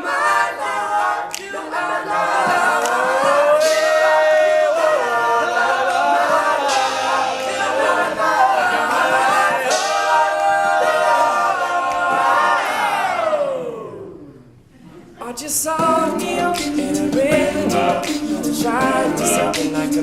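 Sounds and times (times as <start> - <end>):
male a cappella group singing: 0.0 - 14.2, 15.2 - 20.0
breathy percussive hiss: 2.5 - 10.8.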